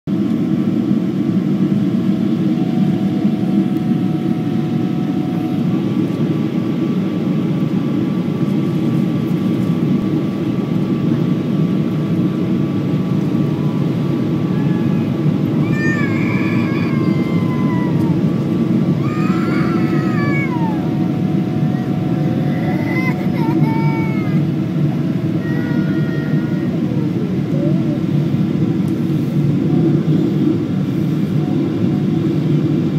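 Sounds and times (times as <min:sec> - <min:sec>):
jet airliner rush: 0:00.4 - 0:32.9
high-pitched wavering cries: 0:13.6 - 0:24.5, 0:25.2 - 0:28.0.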